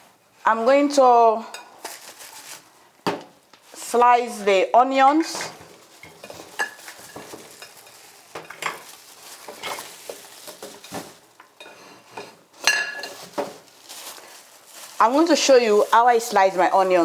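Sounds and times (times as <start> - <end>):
dry rustling: 1.8 - 2.8, 5.3 - 17.0.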